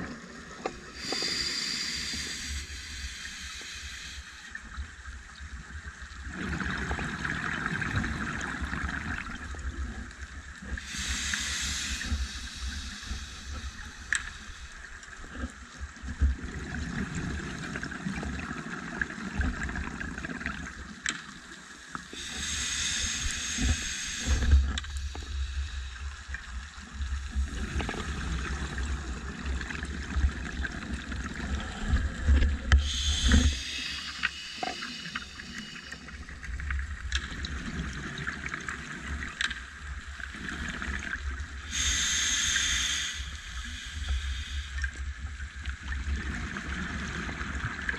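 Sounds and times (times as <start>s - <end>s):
hissing regulator inhale: 0.9s - 4.8s, 10.8s - 15.4s, 22.0s - 26.6s, 31.4s - 36.8s, 41.6s - 45.4s.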